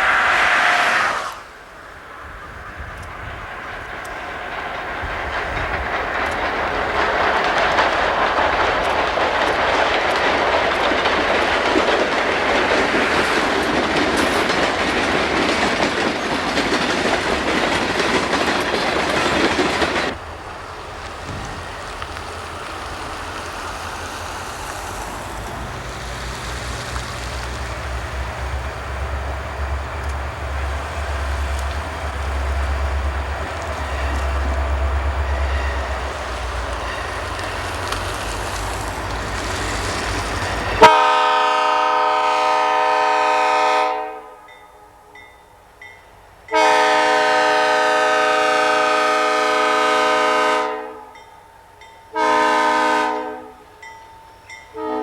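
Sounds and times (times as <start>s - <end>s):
freight train rumbling past: 0.0s - 55.0s
locomotive air horn blasts: 40.8s - 45.1s, 46.5s - 51.2s, 52.1s - 53.7s, 54.7s - 55.0s.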